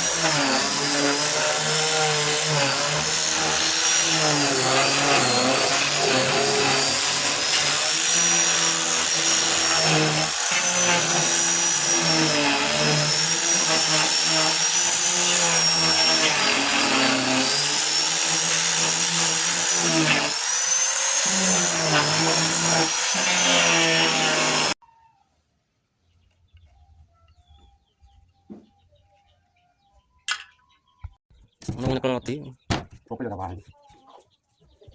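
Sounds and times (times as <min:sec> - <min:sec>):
power tool cutting wood: 0:00.0 - 0:24.8.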